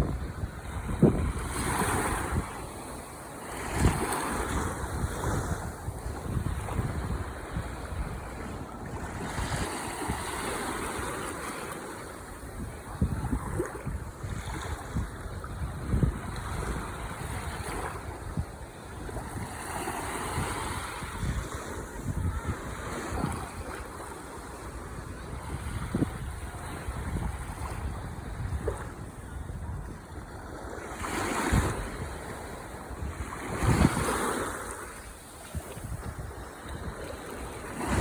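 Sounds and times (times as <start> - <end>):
wind buffeting microphone: 0.0 - 11.1, 12.3 - 38.0
ocean waves breaking: 0.1 - 15.2.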